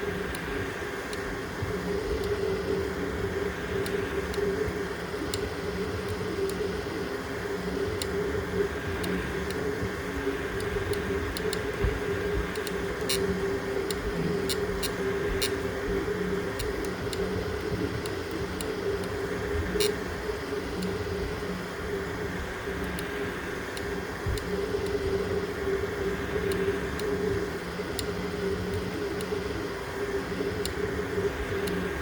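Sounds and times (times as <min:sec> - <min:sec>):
printer mechanical hum: 0:00.0 - 0:32.0
faint clicks: 0:00.2 - 0:02.7, 0:10.4 - 0:21.0, 0:22.7 - 0:25.0.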